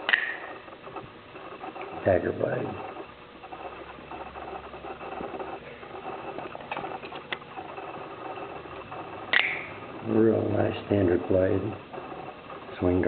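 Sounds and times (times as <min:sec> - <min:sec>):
small sharp clicks: 0:08.9 - 0:09.7.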